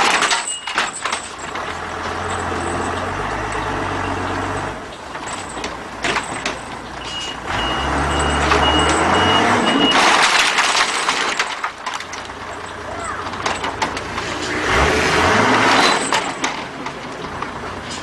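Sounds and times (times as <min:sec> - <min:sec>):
heavy truck engine running: 0:00.0 - 0:18.0
reversing alarm beeping: 0:07.0 - 0:10.2.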